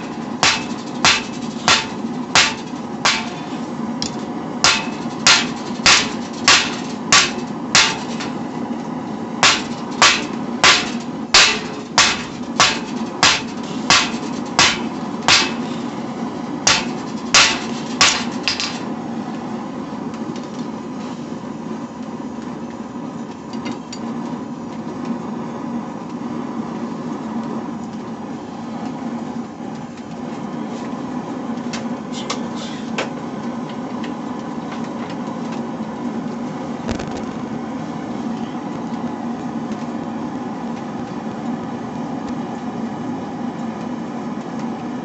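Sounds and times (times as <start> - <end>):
hammer striking steel on anvil: 0.0 - 8.4, 9.4 - 15.8, 16.6 - 18.8.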